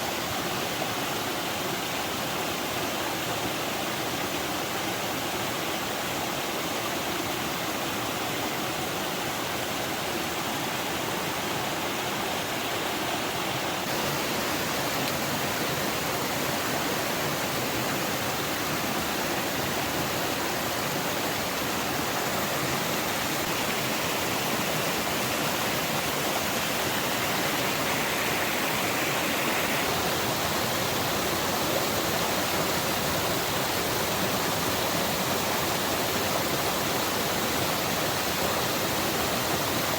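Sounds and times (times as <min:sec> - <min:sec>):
flowing water rushing: 0:00.0 - 0:39.9.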